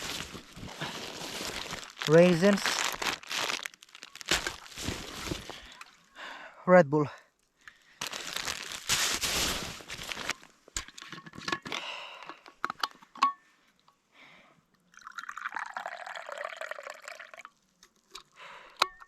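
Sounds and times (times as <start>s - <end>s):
liquid pouring into a cup: 14.9s - 17.6s.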